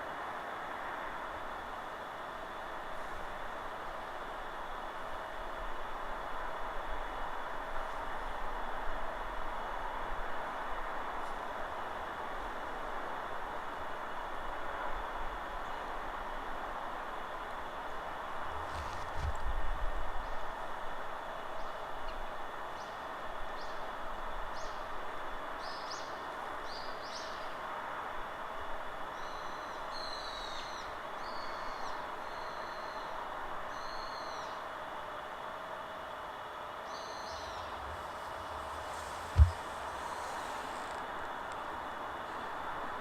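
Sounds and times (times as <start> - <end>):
forest wind rushing: 0.0 - 43.0
outdoor ambient hiss: 0.0 - 43.0
wild birds chirping: 36.7 - 40.7
wind rumble on microphone: 37.6 - 43.0
low thump: 39.3 - 40.0.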